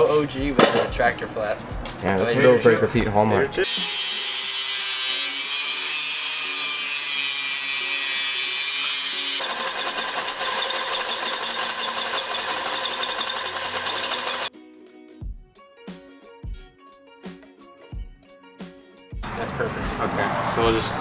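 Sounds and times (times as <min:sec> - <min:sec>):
power tool high-pitched hiss: 0:03.6 - 0:09.4.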